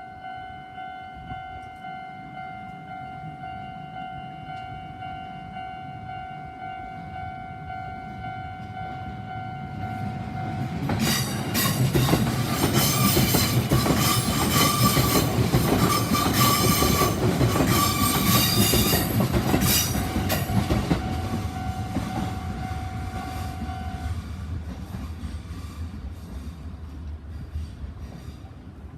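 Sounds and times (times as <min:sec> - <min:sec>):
train wheels clacking over rail joints: 0:10.8 - 0:22.3.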